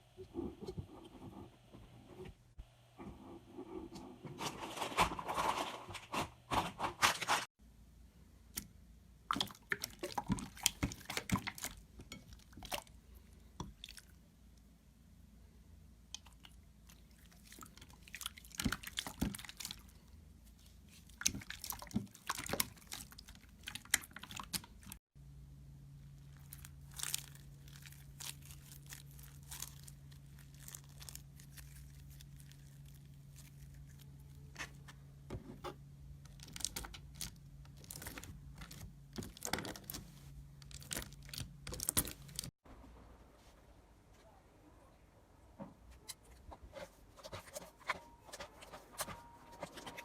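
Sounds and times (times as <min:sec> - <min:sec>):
steady low hum: 0:25.2 - 0:50.0.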